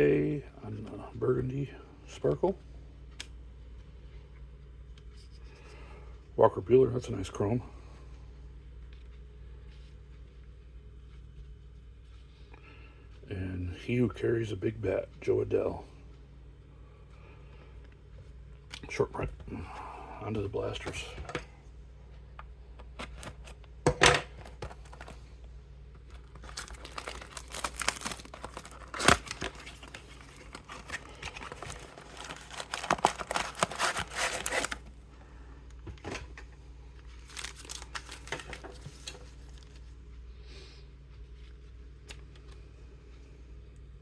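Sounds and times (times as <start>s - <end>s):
foil wrapping crinkling: 26.1s - 35.0s, 37.0s - 39.8s.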